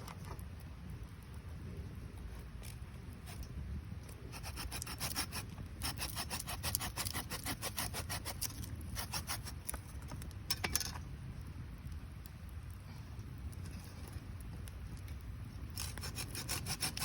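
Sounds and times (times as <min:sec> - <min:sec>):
campfire crackling pops: 0:00.0 - 0:04.2, 0:08.4 - 0:16.0
low steady rumble: 0:00.0 - 0:16.7.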